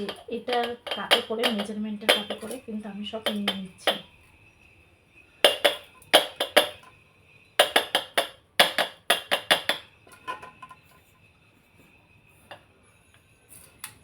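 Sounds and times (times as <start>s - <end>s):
measuring cup knocking: 0.0s - 2.6s, 3.2s - 4.0s, 5.4s - 6.8s, 7.6s - 10.4s.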